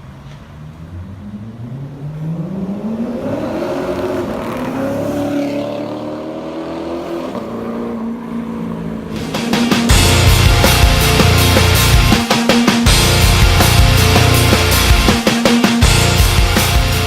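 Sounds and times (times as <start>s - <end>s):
car exhaust accelerating: 0.6s - 12.2s.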